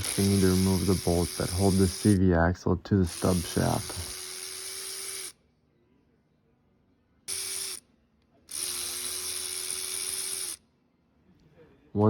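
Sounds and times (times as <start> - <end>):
power tool spinning out bolts: 0.0 - 2.2, 3.1 - 5.4, 8.5 - 10.6.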